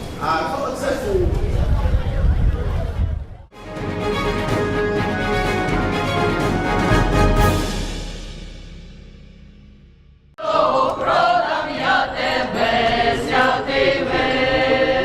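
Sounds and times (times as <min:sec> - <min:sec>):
music: 0:03.5 - 0:14.9
choir singing: 0:10.4 - 0:15.0.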